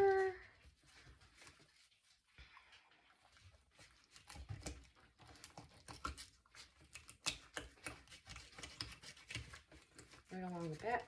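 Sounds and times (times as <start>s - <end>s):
knife scraping through fish: 3.7s - 11.0s.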